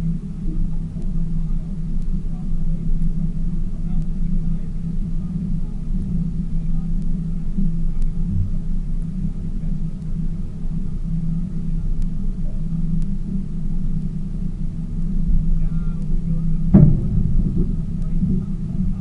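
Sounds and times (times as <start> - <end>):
boat engine droning: 0.0 - 19.0
loud bump: 16.7 - 19.0.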